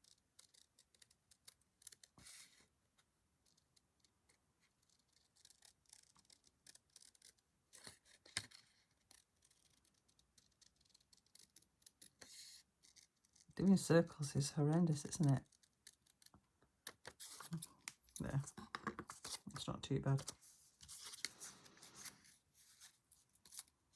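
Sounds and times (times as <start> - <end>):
paper rustle: 19.0 - 23.7.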